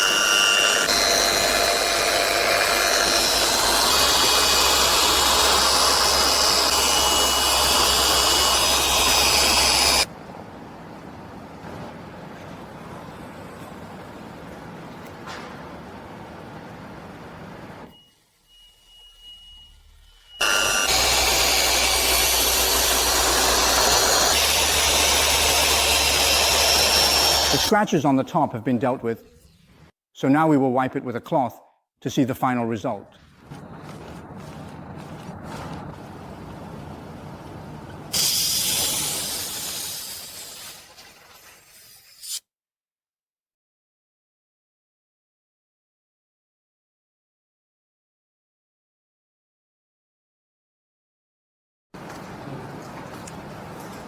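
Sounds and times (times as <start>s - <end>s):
electric polisher whining: 0.0s - 10.1s, 20.4s - 27.7s.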